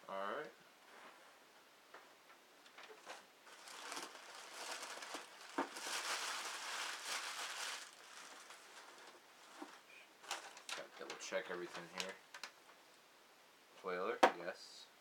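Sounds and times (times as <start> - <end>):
packing material crumpling: 3.0 - 10.9.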